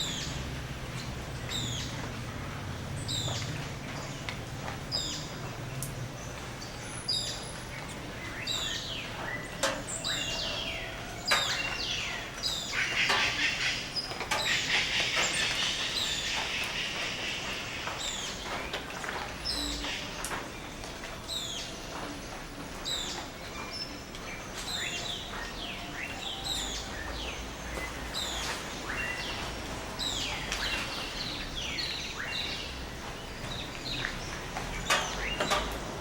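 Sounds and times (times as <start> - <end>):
birds chirping and whistling: 6.6 - 18.8, 21.3 - 36.0.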